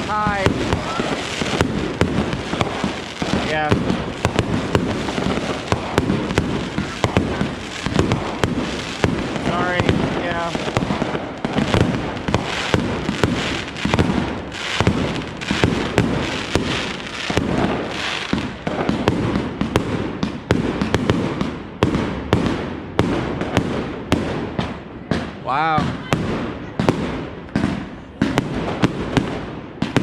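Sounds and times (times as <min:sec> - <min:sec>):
firework shells banging: 0:00.0 - 0:19.0
firework crackling: 0:00.0 - 0:30.0.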